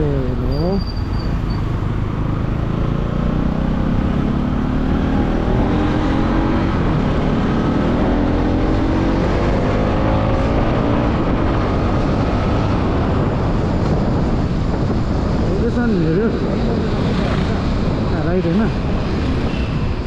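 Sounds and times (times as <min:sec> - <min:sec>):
road rumble: 0:00.0 - 0:20.0
wind noise: 0:00.0 - 0:20.0
vehicle engine accelerating: 0:01.4 - 0:14.8.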